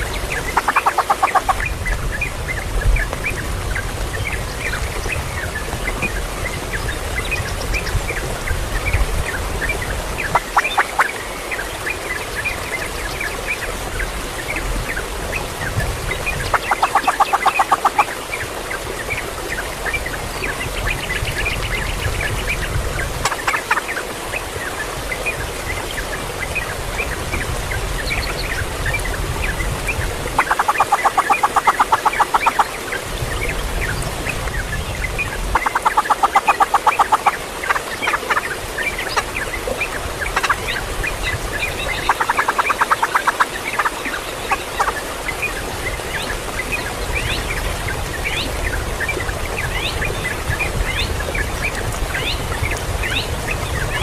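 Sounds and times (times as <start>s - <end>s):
chickens clucking: 0.4s - 1.6s, 10.3s - 11.1s, 16.4s - 18.1s, 23.2s - 23.8s, 30.4s - 32.8s, 35.5s - 38.5s, 40.4s - 40.7s, 42.0s - 45.0s.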